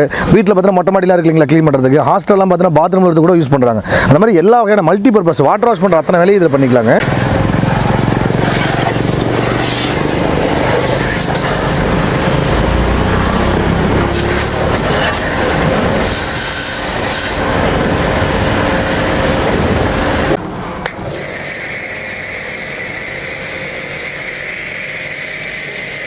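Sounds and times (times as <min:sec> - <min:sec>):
water jet hissing: 0:05.5 - 0:20.4, 0:21.1 - 0:23.3
pressure washer motor hum: 0:05.6 - 0:26.0.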